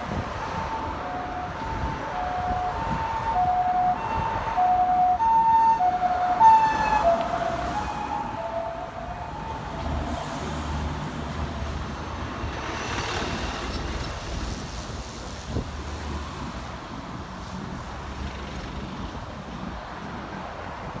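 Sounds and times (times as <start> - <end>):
ambulance siren: 0.0 - 12.0
vehicles passing: 0.0 - 21.0.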